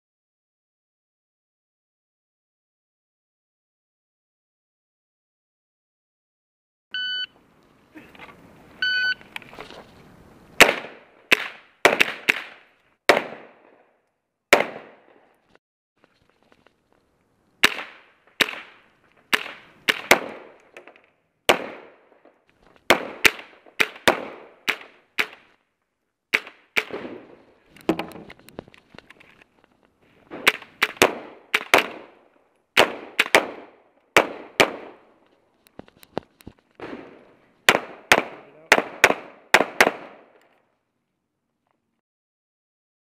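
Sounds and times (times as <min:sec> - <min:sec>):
gunshots cracking with echo: 0:10.6 - 0:13.7, 0:14.5 - 0:15.1, 0:17.6 - 0:20.6, 0:21.5 - 0:22.0, 0:22.9 - 0:25.4, 0:30.3 - 0:32.2, 0:32.8 - 0:35.0, 0:36.8 - 0:40.3.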